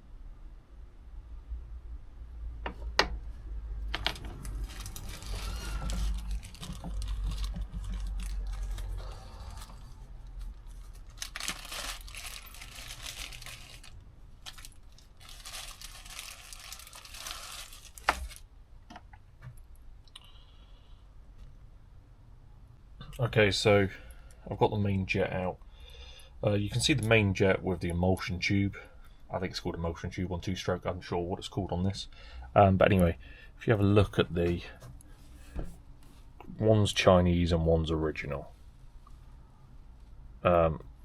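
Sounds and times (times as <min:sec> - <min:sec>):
rustling and scraping: 0:03.9 - 0:18.4, 0:34.4 - 0:36.4.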